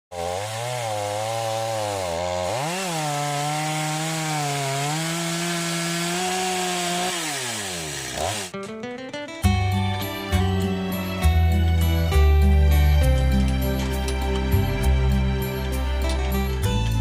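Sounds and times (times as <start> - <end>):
chainsaw sawing wood: 0.1 - 8.6.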